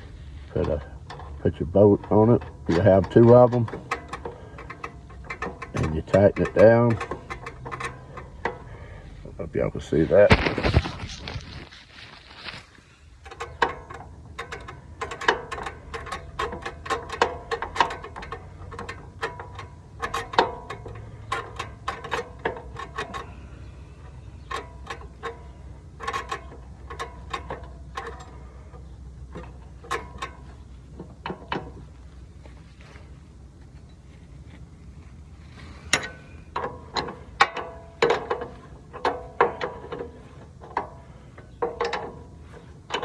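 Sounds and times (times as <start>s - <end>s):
ratchet wrench clicking: 2.0s - 8.8s, 13.2s - 31.8s.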